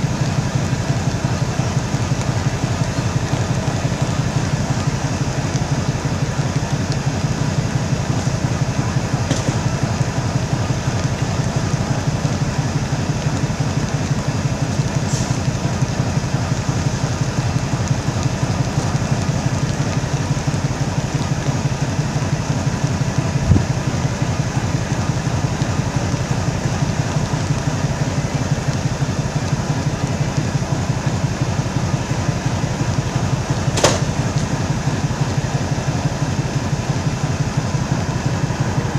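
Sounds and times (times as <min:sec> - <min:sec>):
diesel locomotive engine running: 0:00.0 - 0:38.9
short thump: 0:33.8 - 0:34.2.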